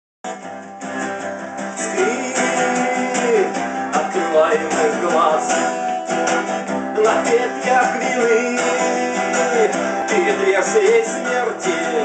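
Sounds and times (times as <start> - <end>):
acoustic guitar strumming: 0.2 - 12.0.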